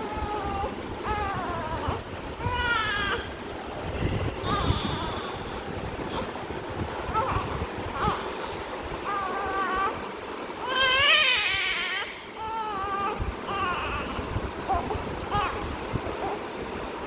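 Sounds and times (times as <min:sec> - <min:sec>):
newborn baby crying: 0:00.0 - 0:03.4, 0:04.4 - 0:06.4, 0:07.1 - 0:10.0, 0:10.6 - 0:16.4.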